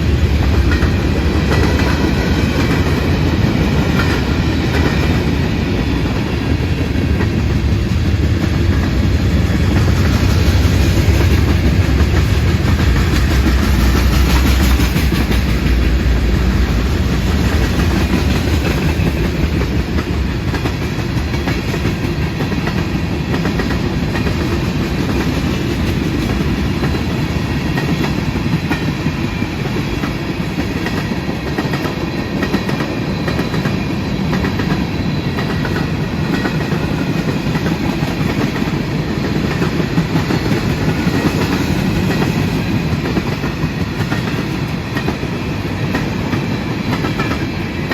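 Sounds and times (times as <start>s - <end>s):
freight train rumbling on rails: 0.0s - 47.9s.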